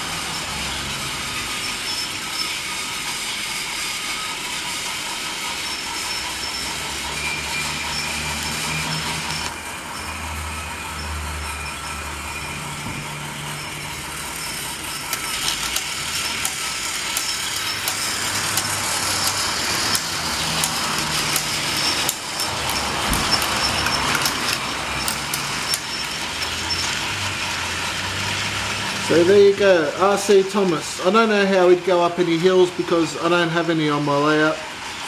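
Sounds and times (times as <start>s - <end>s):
toy train motor whirring: 0.0s - 35.0s
wheels clicking over track: 11.4s - 33.3s.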